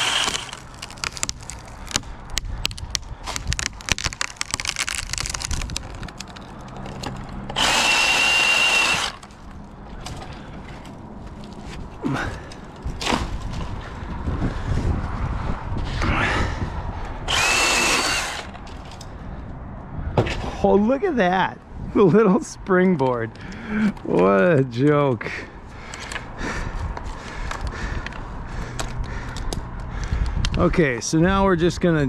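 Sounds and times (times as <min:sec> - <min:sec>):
battery saw whining: 0:00.0 - 0:00.6, 0:07.5 - 0:09.3, 0:17.3 - 0:18.5
sharp clicks and crackles: 0:00.0 - 0:08.0.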